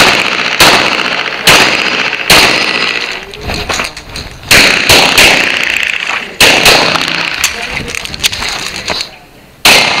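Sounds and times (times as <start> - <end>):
pistol shots ringing: 0.0 - 3.2, 4.4 - 7.6, 9.6 - 10.0.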